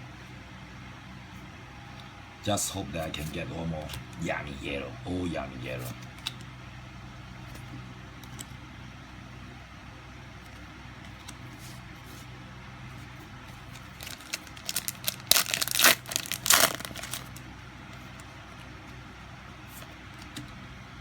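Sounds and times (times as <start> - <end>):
faint low hum: 0.0 - 21.0
wrapper crinkling and tearing: 13.7 - 17.4.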